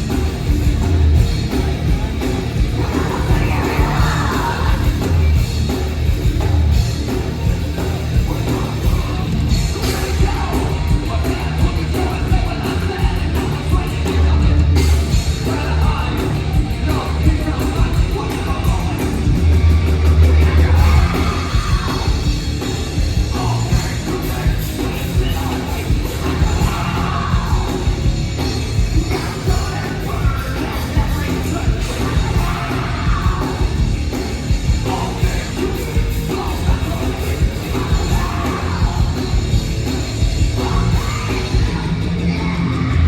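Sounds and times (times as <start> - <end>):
rock band playing live: 0.0 - 43.0
person yelling and singing: 2.7 - 5.4, 8.2 - 14.6, 20.2 - 22.4, 23.3 - 28.1, 28.8 - 33.9, 34.8 - 39.6, 40.5 - 43.0.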